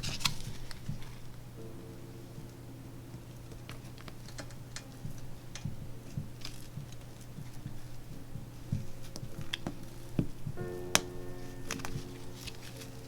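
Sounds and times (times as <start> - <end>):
steady low hum: 0.0 - 13.0
small tools clicking and tapping: 3.5 - 13.0.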